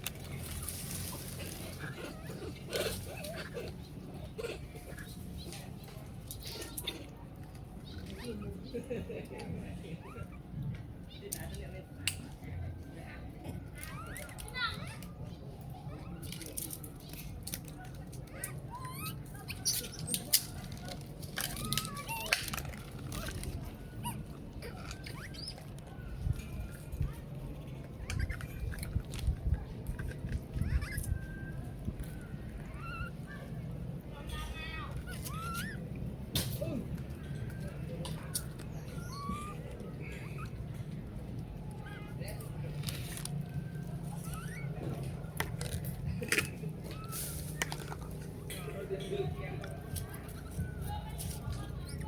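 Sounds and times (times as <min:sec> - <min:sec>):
rustling: 0:00.0 - 0:03.7
monkeys squeaky calls: 0:00.4 - 0:05.5, 0:13.7 - 0:26.8, 0:27.8 - 0:33.7, 0:34.6 - 0:36.2, 0:37.2 - 0:48.7, 0:49.7 - 0:52.0.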